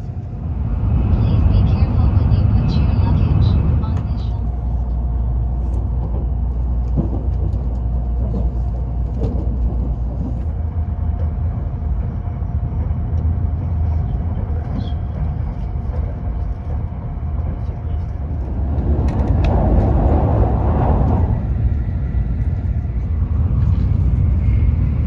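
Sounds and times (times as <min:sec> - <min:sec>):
train rumble: 0:00.0 - 0:25.0.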